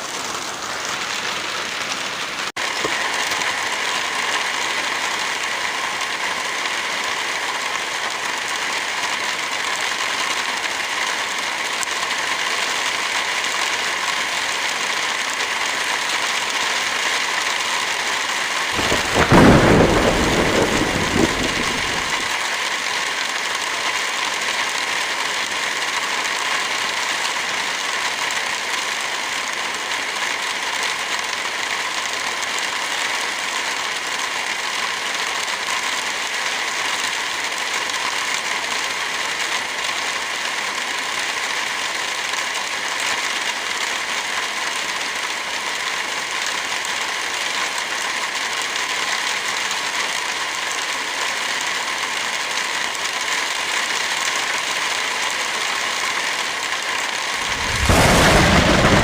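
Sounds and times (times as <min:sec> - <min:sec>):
wood fire crackling: 0:00.0 - 0:26.1, 0:56.5 - 0:59.0
steady rain hiss: 0:00.0 - 0:59.0.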